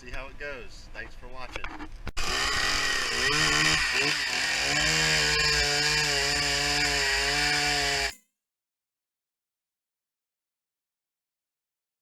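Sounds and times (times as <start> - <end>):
chainsaw cutting log: 2.2 - 8.2.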